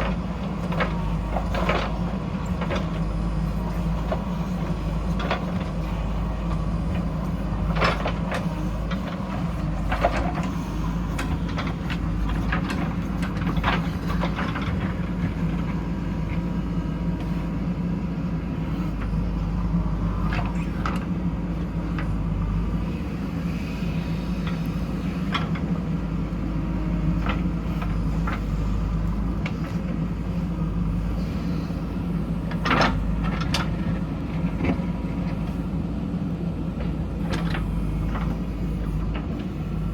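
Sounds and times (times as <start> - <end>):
diesel engine running: 0.0 - 39.9.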